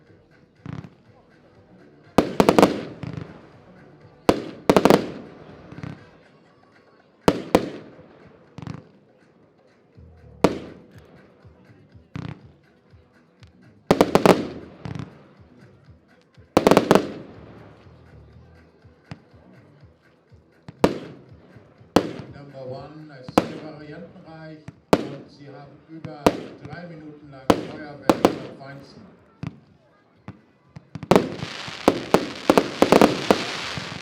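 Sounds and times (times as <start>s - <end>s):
firework crackle: 13.9s - 15.3s, 31.0s - 34.0s
firework shells bursting: 31.0s - 34.0s.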